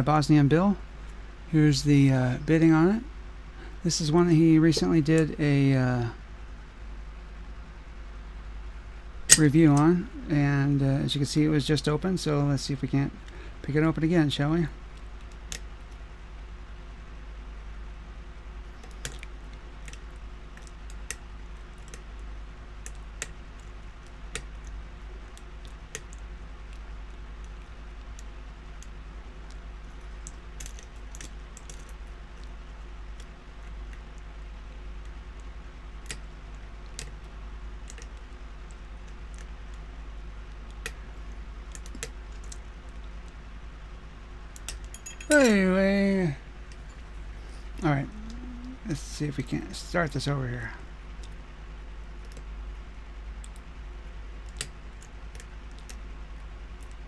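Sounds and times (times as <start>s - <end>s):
steady low hum: 0.0s - 57.0s
lock pick metallic clicks: 9.3s - 9.9s, 44.6s - 45.5s.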